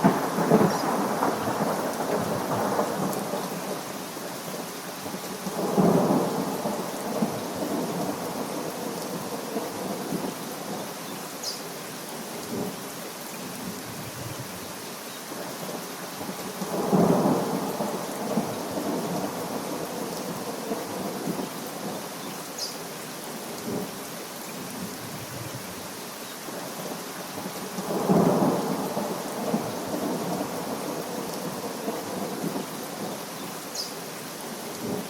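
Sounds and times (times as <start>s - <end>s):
steady rain: 0.0s - 35.0s.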